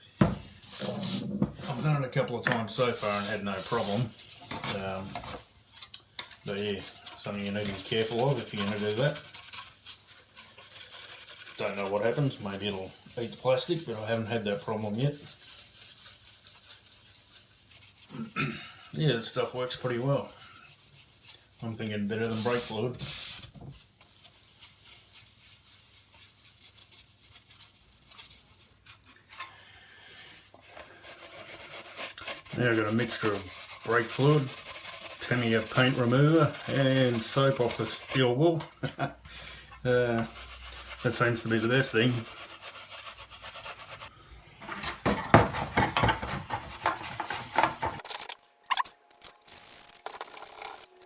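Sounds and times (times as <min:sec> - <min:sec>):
steel wool scrubbing plastic: 0:00.6 - 0:29.5, 0:30.2 - 0:44.1, 0:45.4 - 0:48.1
brief squeaks: 0:48.7 - 0:49.0.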